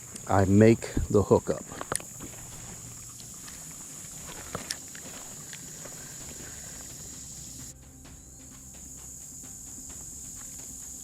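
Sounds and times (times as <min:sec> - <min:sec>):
insects droning: 0:00.0 - 0:11.0
faint clicks and ticks: 0:01.7 - 0:07.7.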